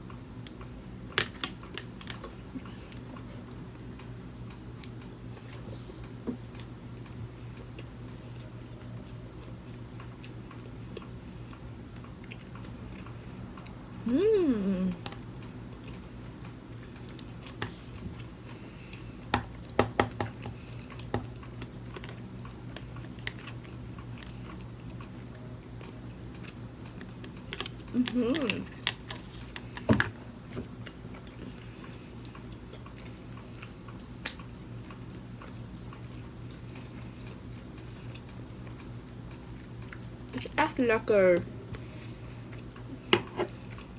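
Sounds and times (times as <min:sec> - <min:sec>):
steady low hum: 0:00.0 - 0:43.9
person chewing food: 0:00.1 - 0:40.3, 0:41.7 - 0:43.9
person humming: 0:14.0 - 0:15.1, 0:27.9 - 0:28.7.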